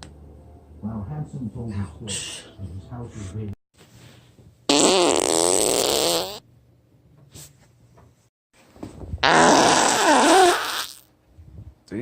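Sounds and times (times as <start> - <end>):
buzzy fart sounds: 4.7 - 6.4, 9.2 - 11.1.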